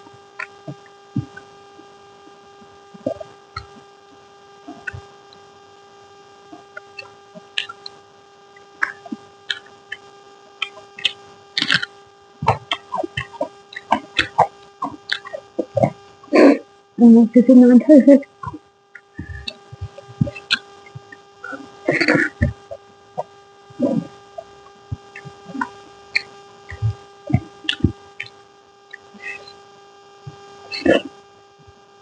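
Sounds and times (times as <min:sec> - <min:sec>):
steady electrical hum: 0:00.0 - 0:32.0
mouth smacks and chewing clicks: 0:07.0 - 0:08.0, 0:08.8 - 0:10.0, 0:10.6 - 0:16.0, 0:24.9 - 0:29.6.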